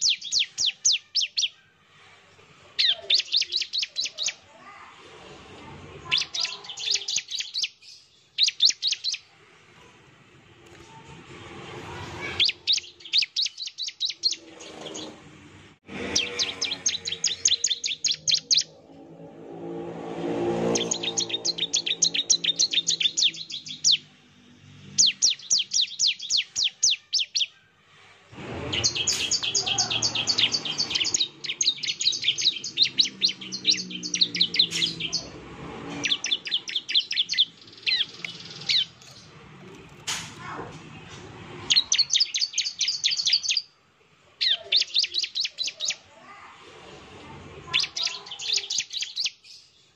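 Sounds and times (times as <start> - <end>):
bird calling in rapid high notes: 0.0 - 1.7, 2.8 - 4.4, 6.0 - 7.8, 12.2 - 15.0, 16.0 - 18.8, 20.6 - 24.1, 28.7 - 35.4, 36.0 - 39.0, 47.7 - 49.3.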